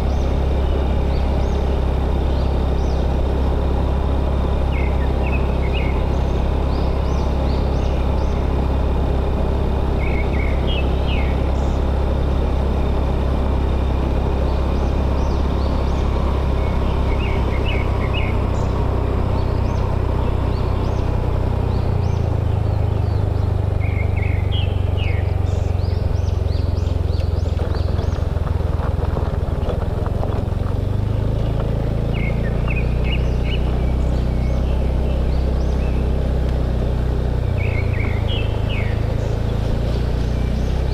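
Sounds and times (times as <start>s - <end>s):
birds chirping: 0.0s - 40.9s
motorbike engine running: 0.0s - 40.9s.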